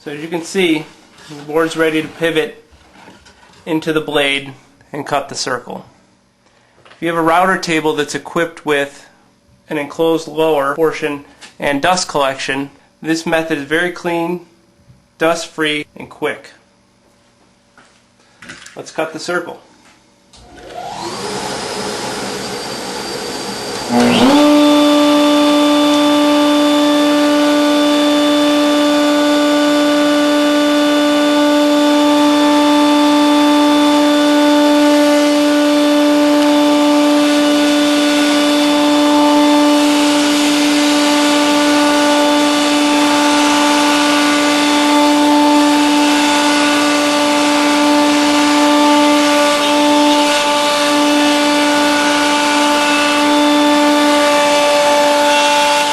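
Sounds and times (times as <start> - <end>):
dust extraction rushing: 20.4 - 55.9
router bit cutting wood: 20.4 - 55.9
router whining: 20.4 - 55.9.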